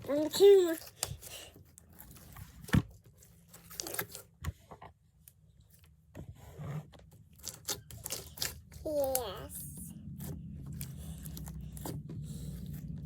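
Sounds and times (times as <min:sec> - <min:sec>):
slime squelching and tearing: 0:00.4 - 0:04.4, 0:07.2 - 0:13.0.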